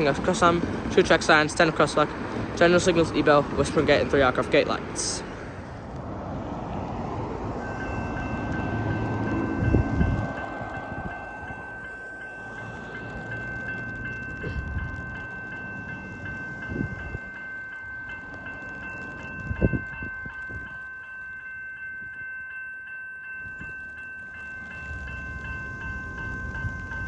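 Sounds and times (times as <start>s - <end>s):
level crossing bell ringing: 7.6s - 27.0s.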